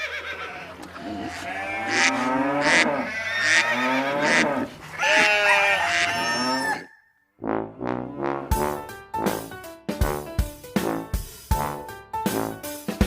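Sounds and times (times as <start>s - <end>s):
farm animals calling: 0.0s - 7.2s.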